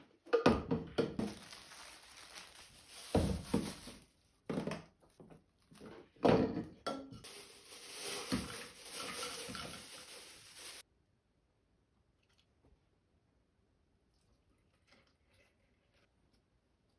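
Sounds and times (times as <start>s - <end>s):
dishes and utensils clinking: 6.4s - 10.4s.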